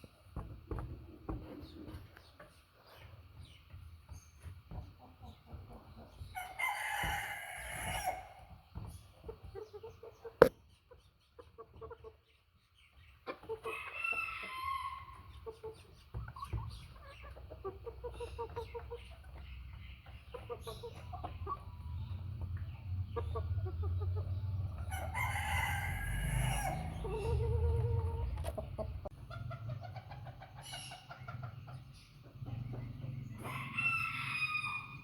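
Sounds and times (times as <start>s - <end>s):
hens clucking: 0.4s - 12.2s, 13.2s - 35.0s.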